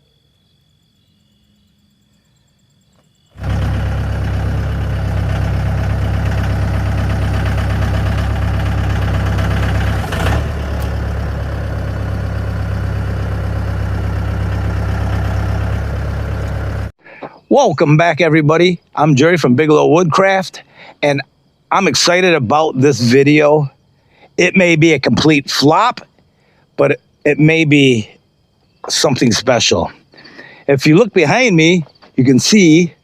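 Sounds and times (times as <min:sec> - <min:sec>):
engine running steadily: 0:03.4 - 0:16.9
engine click: 0:09.4 - 0:11.3.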